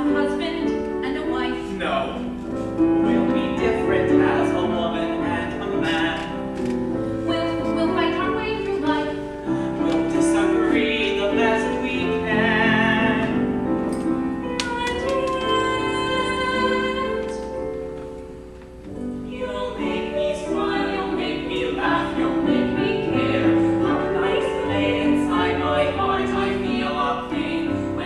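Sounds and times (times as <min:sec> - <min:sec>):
piano accompaniment: 0:00.0 - 0:28.0
voices singing show tune: 0:19.3 - 0:28.0.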